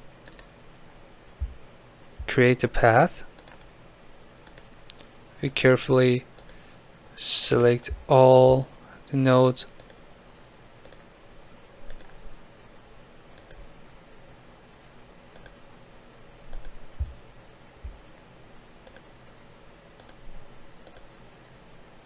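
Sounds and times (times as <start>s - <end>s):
computer mouse clicks: 0.2s - 0.5s, 3.4s - 3.7s, 4.4s - 5.6s, 6.4s - 6.6s, 9.7s - 10.0s, 10.8s - 11.1s, 11.9s - 12.2s, 13.4s - 13.7s, 15.3s - 15.6s, 16.5s - 16.8s, 18.8s - 19.1s, 20.0s - 20.2s, 20.8s - 21.2s
soft low thumps: 1.4s - 2.4s, 16.9s - 17.2s, 17.8s - 18.1s.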